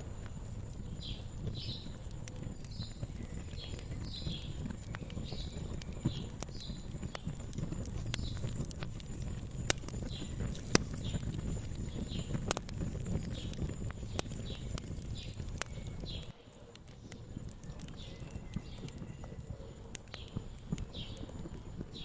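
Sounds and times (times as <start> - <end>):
low rumble: 0.0 - 16.3
wood fire crackling: 0.0 - 22.0
bird chirping: 0.2 - 12.5, 13.2 - 22.0.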